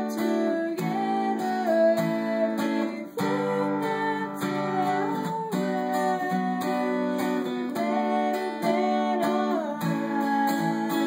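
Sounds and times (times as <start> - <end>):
acoustic guitar strumming: 0.0 - 11.0
person singing pop song: 0.0 - 11.0.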